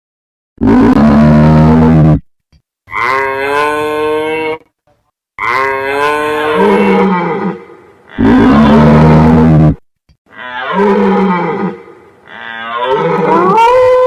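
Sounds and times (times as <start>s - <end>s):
loud animal roar: 0.6s - 2.2s, 5.4s - 14.0s
cow mooing: 2.9s - 4.6s, 5.4s - 9.6s, 10.3s - 14.0s.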